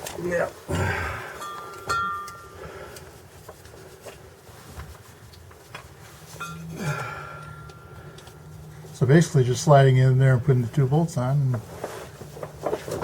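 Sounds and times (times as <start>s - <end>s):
hand tools clicking and knocking: 1.3s - 3.1s.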